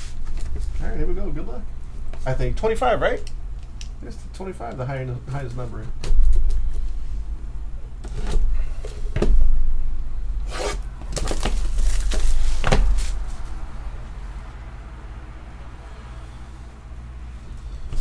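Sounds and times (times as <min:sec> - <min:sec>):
rumble of handling: 0:00.0 - 0:14.9
cardboard and wrapper rustling: 0:10.5 - 0:13.6.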